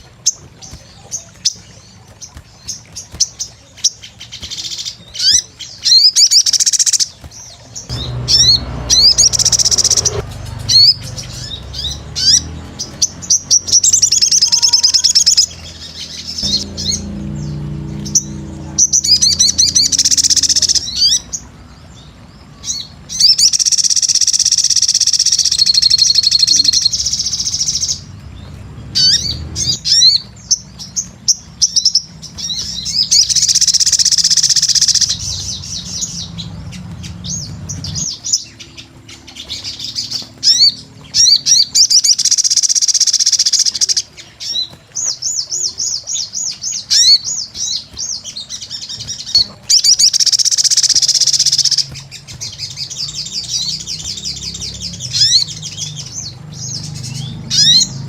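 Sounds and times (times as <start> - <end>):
bird chirping and trilling: 0.0 - 58.0
low hum: 7.3 - 23.2.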